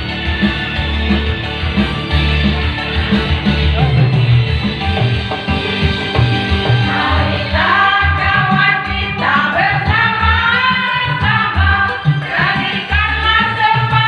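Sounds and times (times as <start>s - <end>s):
heavy bass beat: 0.0s - 9.3s
live band music: 0.0s - 14.0s.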